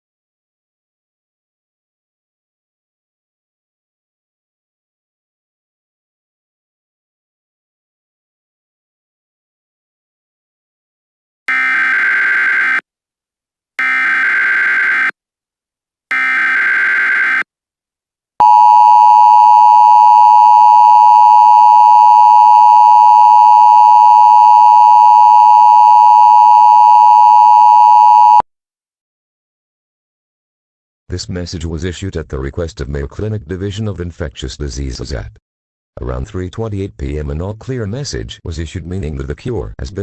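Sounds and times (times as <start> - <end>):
steady two-tone attention signal: 18.4 - 28.4.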